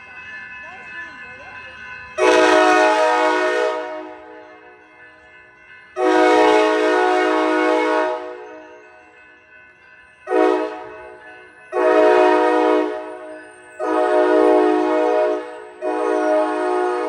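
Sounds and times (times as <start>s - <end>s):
train horn blasts: 2.2s - 4.4s, 6.0s - 8.6s, 10.3s - 10.9s, 11.8s - 13.2s, 13.8s - 17.0s.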